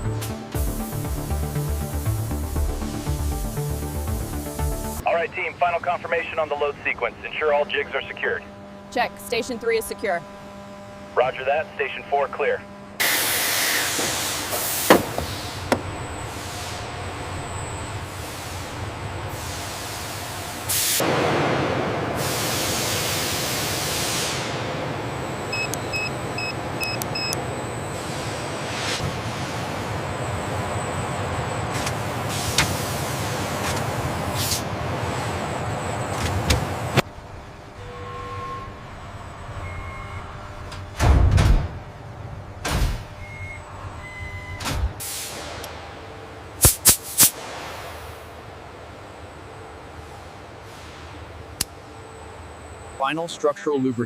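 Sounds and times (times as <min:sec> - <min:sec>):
workshop machinery noise: 0:00.0 - 0:54.0
hiss of air: 0:00.6 - 0:05.0, 0:13.0 - 0:15.6, 0:19.3 - 0:21.0, 0:22.2 - 0:24.6, 0:45.0 - 0:45.6, 0:46.6 - 0:48.1
loud clunk with hiss: 0:13.0 - 0:15.8, 0:46.6 - 0:48.0
machinery thuds: 0:14.8 - 0:16.0
short electronic beeps: 0:25.5 - 0:27.4.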